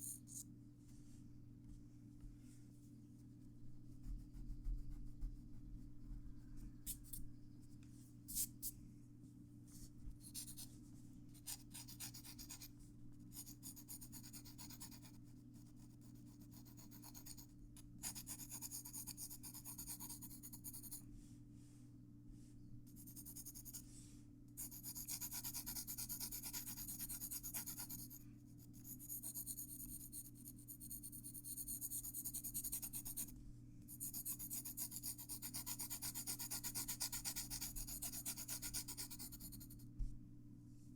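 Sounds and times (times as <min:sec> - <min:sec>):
pencil scratching on paper: 0:10.2 - 0:10.7, 0:11.4 - 0:12.7, 0:13.3 - 0:21.0, 0:22.9 - 0:23.8, 0:24.6 - 0:33.3, 0:33.9 - 0:39.8.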